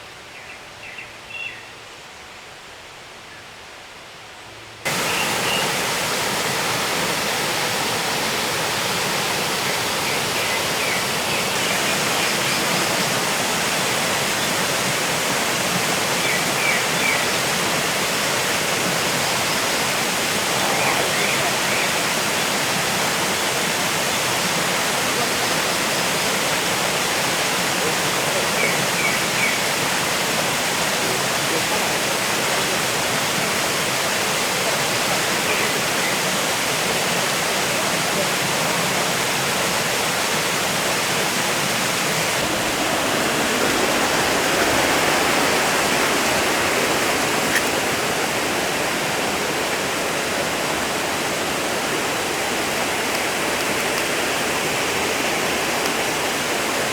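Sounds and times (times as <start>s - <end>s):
stream rushing water: 4.8s - 56.9s.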